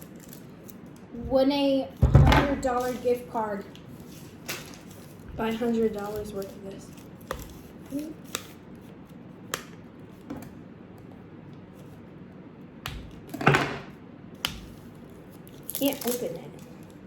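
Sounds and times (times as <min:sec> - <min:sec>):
plastic packaging rustling: 0:02.6 - 0:08.6, 0:14.8 - 0:17.0
plastic packaging clicks and crinkles: 0:15.0 - 0:17.0.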